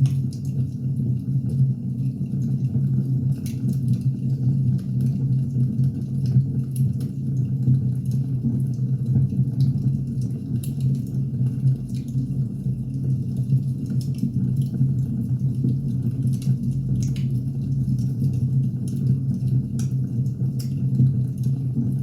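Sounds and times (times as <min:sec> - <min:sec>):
firewood crackling and popping: 0:15.5 - 0:21.6.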